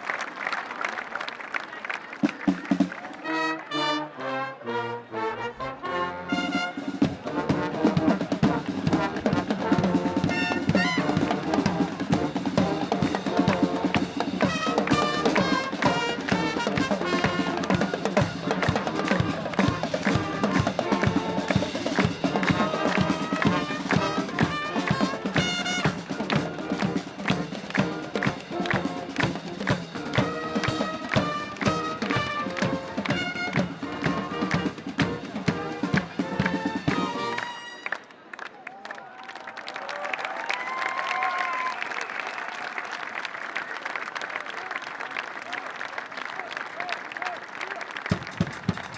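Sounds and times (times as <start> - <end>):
marching wind band playing: 2.2 - 38.3, 48.0 - 48.9
brass chords: 3.0 - 38.3
steady drumbeat: 6.4 - 37.4, 48.1 - 48.9.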